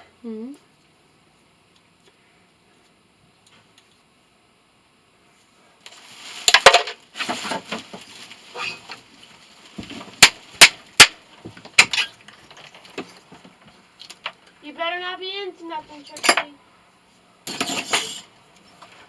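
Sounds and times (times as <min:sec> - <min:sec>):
scrap metal clinking and clanking: 0:17.5 - 0:19.0.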